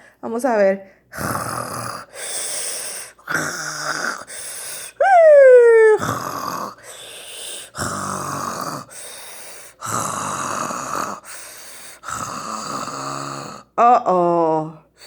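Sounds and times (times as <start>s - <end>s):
quiet breaths: 0.0s - 5.0s, 6.0s - 13.8s
rough snores: 1.1s - 4.9s, 5.9s - 13.7s.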